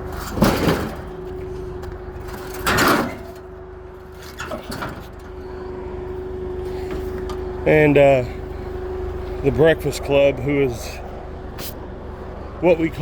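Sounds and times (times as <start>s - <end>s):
metal unit scraping across trailer: 0.0s - 5.7s
engine hum: 0.0s - 13.0s.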